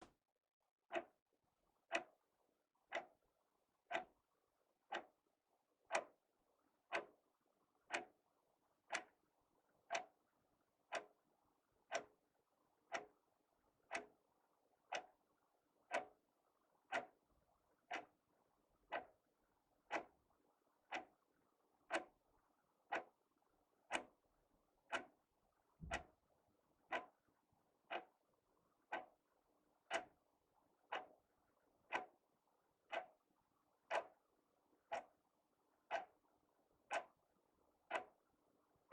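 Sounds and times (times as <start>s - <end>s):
wall clock ticking: 0.9s - 1.2s, 1.8s - 2.2s, 2.8s - 3.2s, 3.8s - 4.2s, 4.8s - 5.2s, 5.8s - 6.2s, 6.8s - 7.2s, 7.8s - 8.2s, 8.8s - 9.2s, 9.8s - 10.2s, 10.8s - 11.2s, 11.8s - 12.2s, 12.8s - 14.3s, 14.9s - 15.2s, 15.9s - 18.2s, 18.8s - 19.2s, 19.8s - 22.2s, 22.8s - 23.2s, 23.8s - 24.2s, 24.8s - 26.3s, 26.9s - 28.2s, 28.8s - 30.2s, 30.8s - 31.3s, 31.9s - 34.2s, 34.8s - 38.9s.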